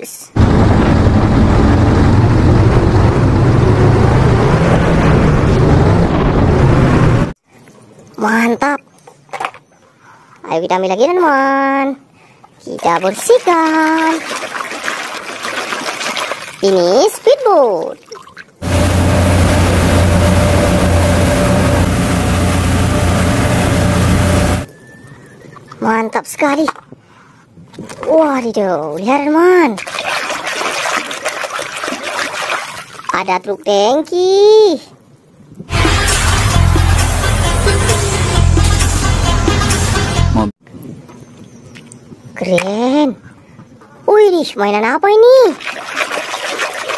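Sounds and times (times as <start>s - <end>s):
pressure washer motor hum: 18.6s - 24.7s.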